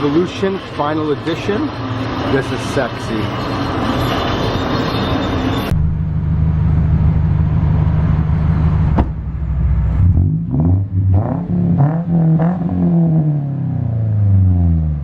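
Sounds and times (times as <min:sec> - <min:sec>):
car engine revving: 0:05.7 - 0:15.0.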